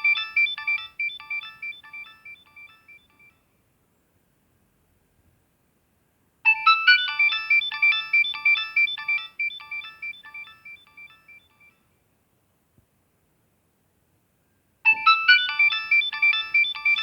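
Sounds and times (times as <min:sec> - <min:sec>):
synthesized phone ringtone: 0:00.0 - 0:03.4, 0:06.5 - 0:11.8, 0:14.9 - 0:17.0.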